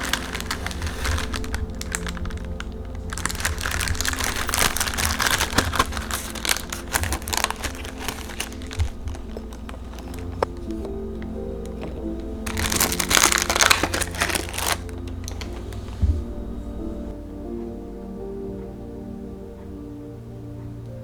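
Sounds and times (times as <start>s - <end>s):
crinkling handling noise: 0.0s - 17.1s
background music: 0.0s - 21.0s.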